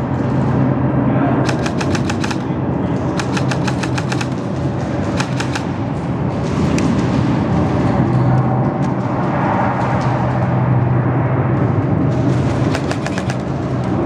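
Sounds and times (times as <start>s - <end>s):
steady low hum: 0.0s - 14.0s
airsoft guns firing full-auto: 1.5s - 2.6s, 3.2s - 5.8s, 12.5s - 13.8s.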